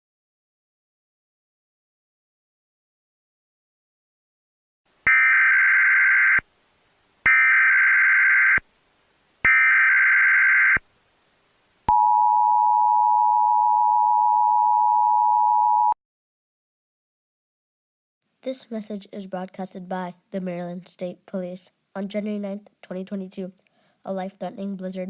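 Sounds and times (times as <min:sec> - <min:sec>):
steady two-tone attention signal: 0:11.9 - 0:16.0.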